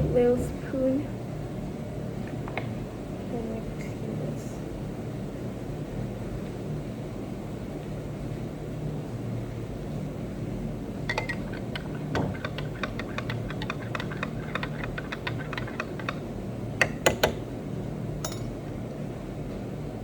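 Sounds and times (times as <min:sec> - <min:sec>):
spoon clinking in cup: 0:11.1 - 0:16.2, 0:18.2 - 0:18.6
loud spoon taps: 0:16.8 - 0:17.4, 0:18.2 - 0:18.5.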